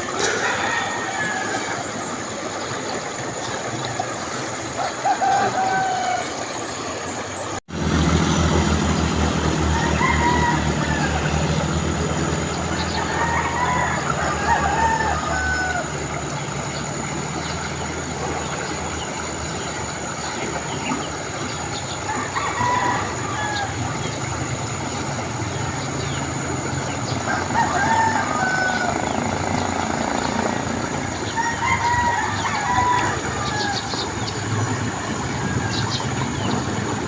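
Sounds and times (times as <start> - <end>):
roosters crowing: 0.0 - 2.2, 4.8 - 6.4, 7.8 - 16.4, 22.0 - 24.5, 25.5 - 36.9.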